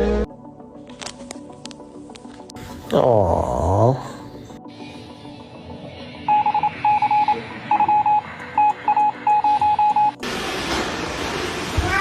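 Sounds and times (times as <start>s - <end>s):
short electronic beeps: 6.3s - 10.2s.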